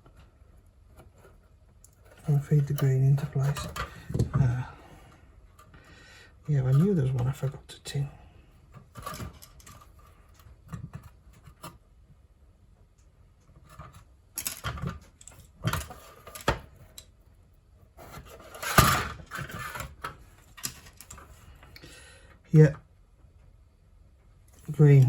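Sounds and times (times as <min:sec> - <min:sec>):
clicks and taps handling wires: 0:00.9 - 0:04.6.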